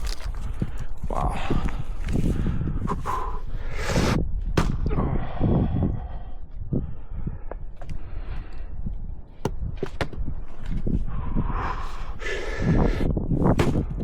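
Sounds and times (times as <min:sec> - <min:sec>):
heavy breathing: 0:00.3 - 0:04.2, 0:04.9 - 0:09.0, 0:10.9 - 0:13.2.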